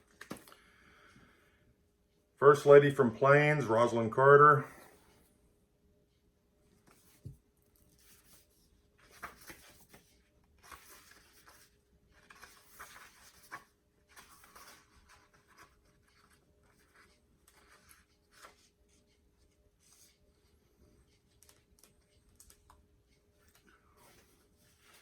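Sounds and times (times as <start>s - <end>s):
book pages turning: 0.0s - 0.5s, 6.8s - 25.0s.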